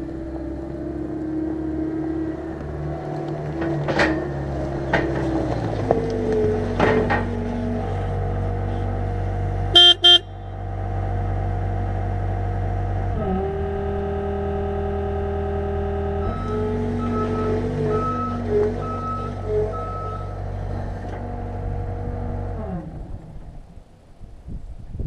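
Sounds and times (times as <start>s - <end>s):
vehicle engine running: 0.0s - 24.0s
horn toots: 9.7s - 10.4s.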